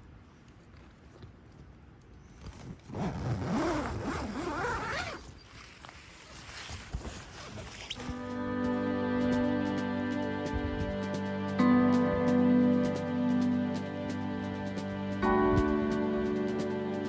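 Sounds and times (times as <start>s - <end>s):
zipper being pulled: 2.4s - 8.2s
background music held notes: 8.0s - 17.0s.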